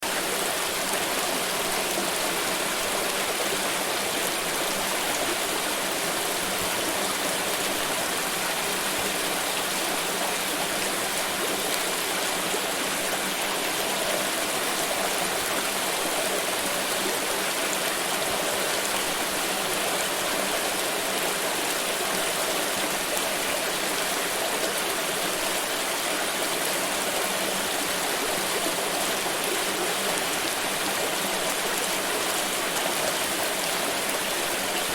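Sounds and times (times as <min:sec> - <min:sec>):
stream of water rushing: 0:00.0 - 0:34.9.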